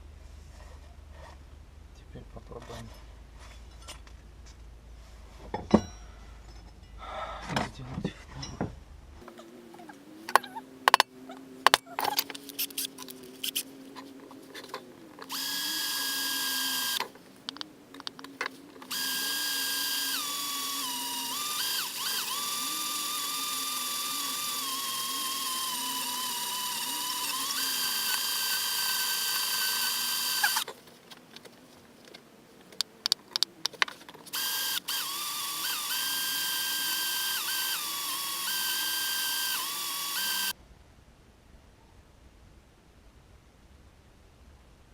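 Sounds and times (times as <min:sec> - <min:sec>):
electric drill boring into metal: 0:15.3 - 0:17.1, 0:18.9 - 0:30.7, 0:34.3 - 0:40.6.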